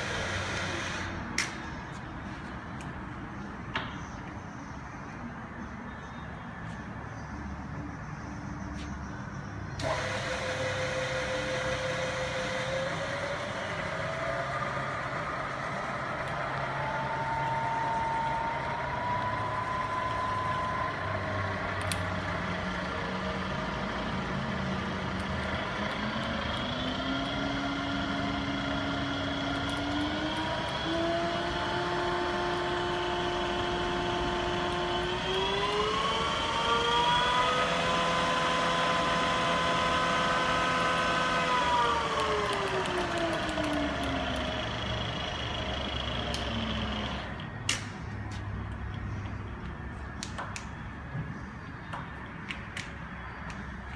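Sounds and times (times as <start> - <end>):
milling machine whine: 9.8 - 47.5.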